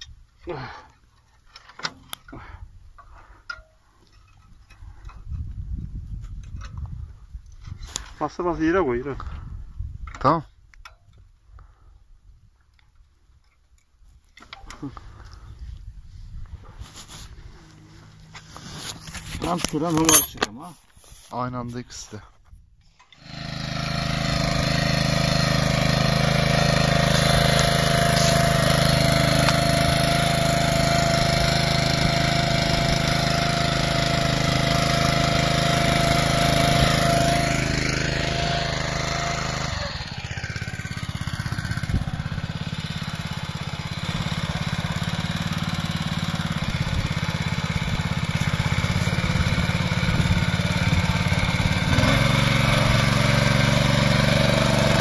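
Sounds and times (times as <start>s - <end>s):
tiller engine running: 23.1s - 55.0s.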